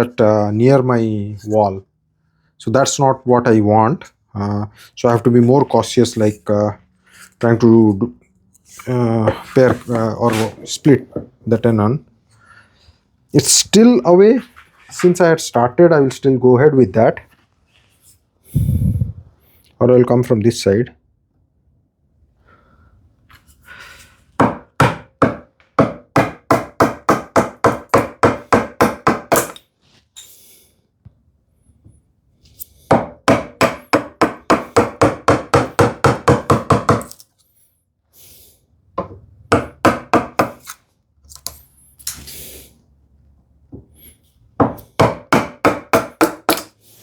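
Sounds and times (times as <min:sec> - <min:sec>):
mallet tapping a chisel: 0:44.6 - 0:46.7.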